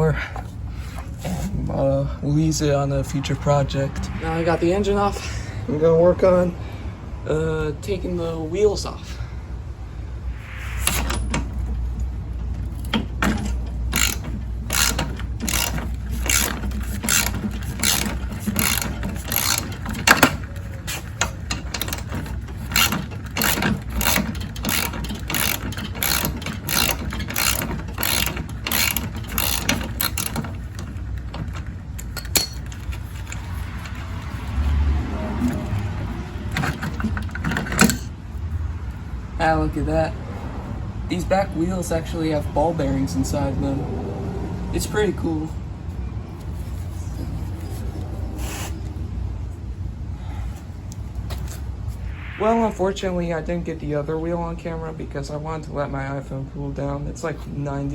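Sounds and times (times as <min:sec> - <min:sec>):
ratchet wrench clicking: 0:12.8 - 0:34.0.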